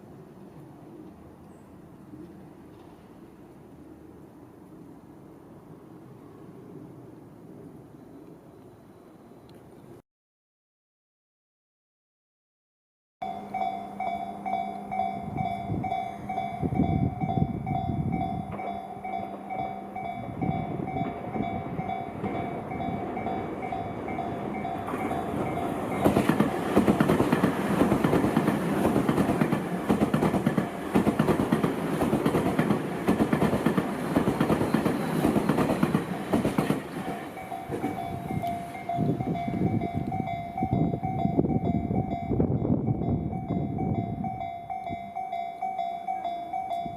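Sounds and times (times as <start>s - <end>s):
level crossing bell ringing: 13.2s - 26.0s, 37.2s - 46.9s
train wheels clattering: 22.1s - 40.4s.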